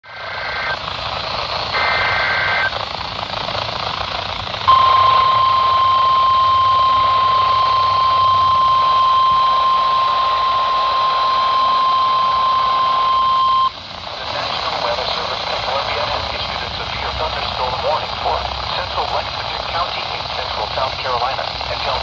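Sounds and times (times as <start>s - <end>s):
radio hiss: 0.0s - 22.0s
steady high alarm tone: 1.7s - 2.8s, 4.7s - 16.2s.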